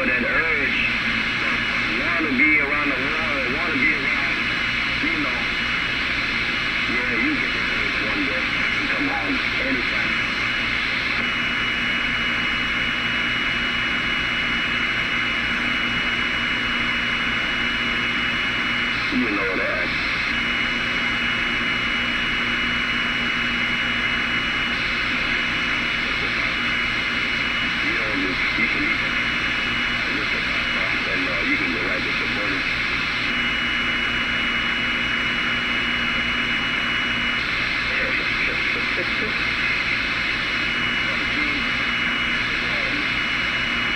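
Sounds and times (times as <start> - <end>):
radio static hiss: 0.0 - 43.9.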